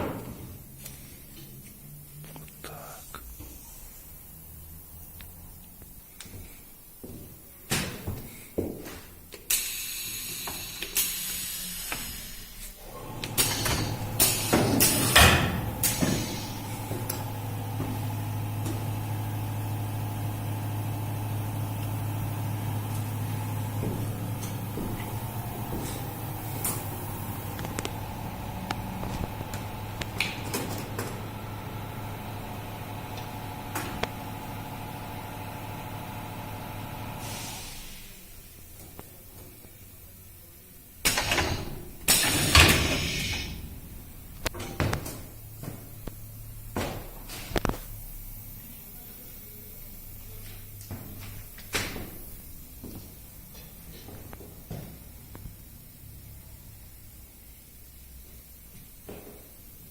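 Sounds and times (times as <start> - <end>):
pneumatic air hiss: 9.4 - 17.0, 37.2 - 38.3, 41.1 - 43.6
welding machine electrical hum: 9.6 - 37.5, 41.0 - 53.2.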